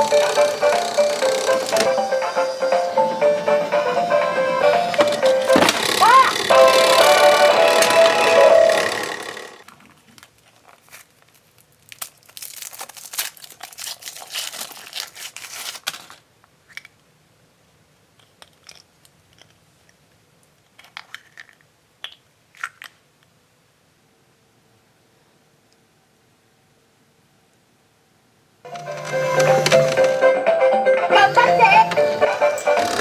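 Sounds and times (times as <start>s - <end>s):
wrapper crinkling and tearing: 9.7s - 16.2s.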